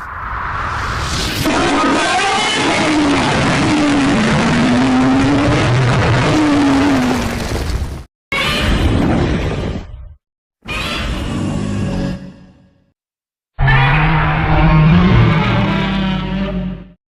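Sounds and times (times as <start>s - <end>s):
monster roar: 1.5s - 7.5s, 13.6s - 17.0s.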